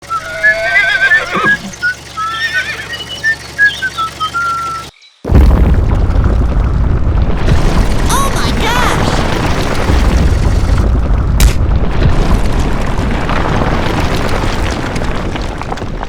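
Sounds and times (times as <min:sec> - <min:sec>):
earthquake rumbling: 0:05.2 - 0:16.0
sharp crack: 0:05.3 - 0:16.0.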